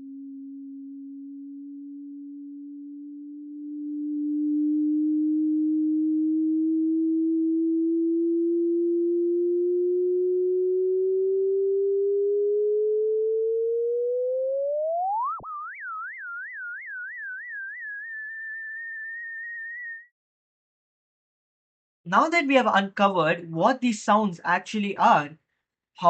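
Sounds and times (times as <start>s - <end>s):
sine tone gliding upward: 0.0s - 20.2s.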